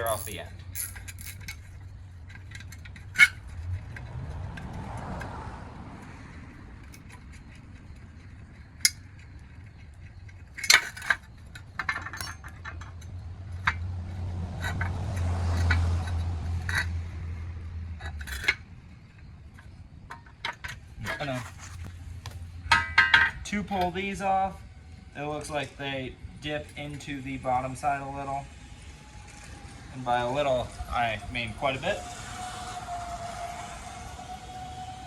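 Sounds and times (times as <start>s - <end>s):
metallic clinks of hand tools: 0.0s - 1.7s.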